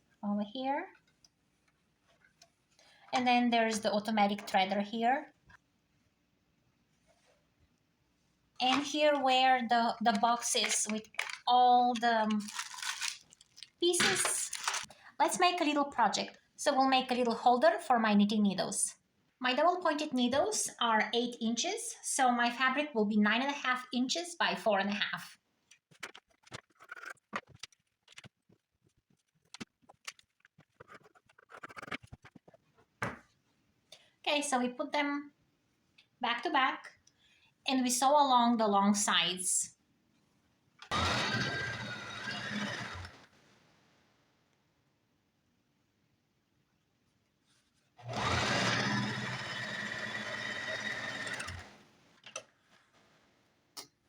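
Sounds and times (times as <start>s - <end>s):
sewing machine motor whine: 40.9s - 43.3s, 48.0s - 51.8s.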